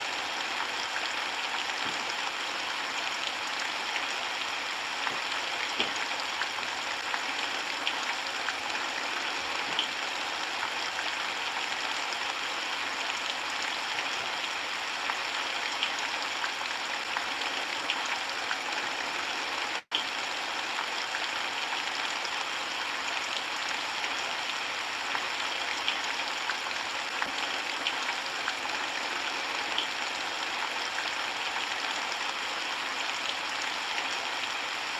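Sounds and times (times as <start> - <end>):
steady rainfall: 0.0 - 34.9.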